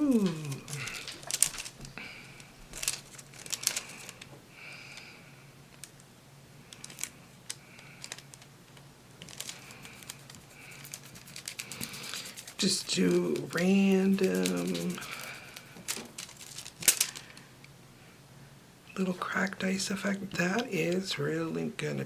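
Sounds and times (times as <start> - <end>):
foil crinkling: 0.0 - 4.3, 6.7 - 8.5, 9.2 - 17.5.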